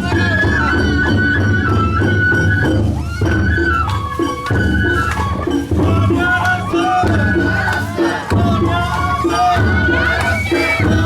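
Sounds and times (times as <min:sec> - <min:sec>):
bamboo flute melody: 0:00.0 - 0:11.0
steady drumming: 0:00.0 - 0:11.0
voices: 0:00.0 - 0:11.0.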